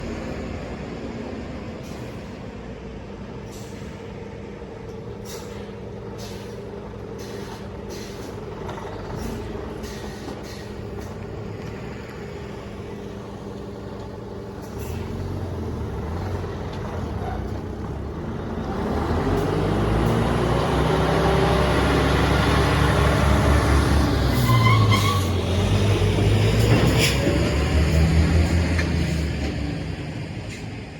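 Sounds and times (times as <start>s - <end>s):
diesel truck engine: 0.0s - 30.9s
air brake hiss: 1.8s - 2.4s, 3.4s - 4.0s, 5.2s - 8.4s, 9.2s - 11.2s, 14.6s - 15.2s.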